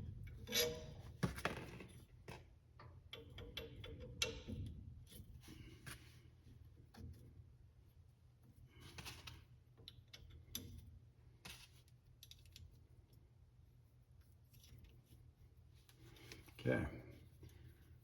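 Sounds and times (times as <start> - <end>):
metal parts scraping: 0.4 - 1.0.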